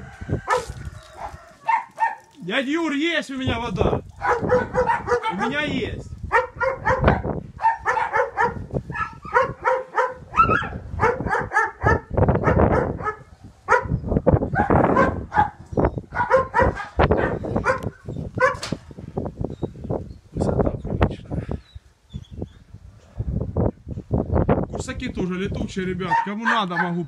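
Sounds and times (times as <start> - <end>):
wind rumbling on microphone: 0.0 - 1.8, 3.4 - 26.2
dog barking: 0.5 - 2.3, 4.2 - 5.7, 6.3 - 18.7, 26.1 - 27.0.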